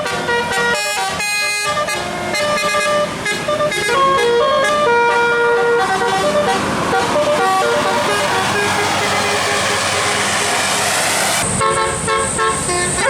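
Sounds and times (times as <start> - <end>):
multi-tone bus horn melody: 0.0 - 13.0.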